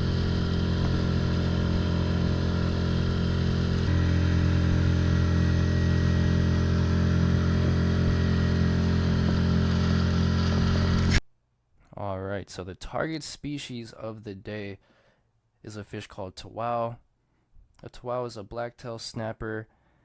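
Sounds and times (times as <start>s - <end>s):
small boat motor running: 0.0s - 11.2s.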